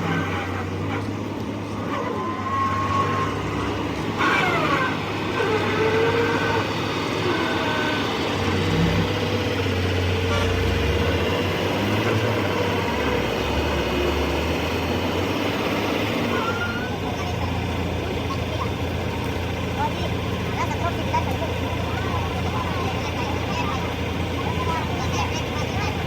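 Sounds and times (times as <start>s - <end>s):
heavy truck engine running: 0.0s - 26.0s
traffic noise: 0.0s - 26.0s.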